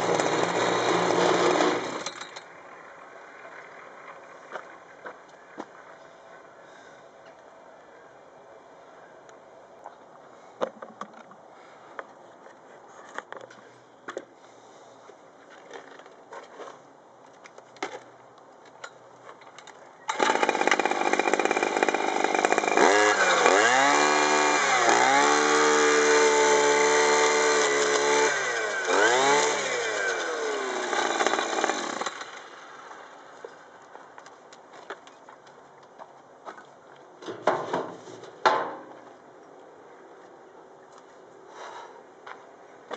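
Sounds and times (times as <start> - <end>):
string trimmer engine running: 0.0 - 2.4, 20.1 - 32.8.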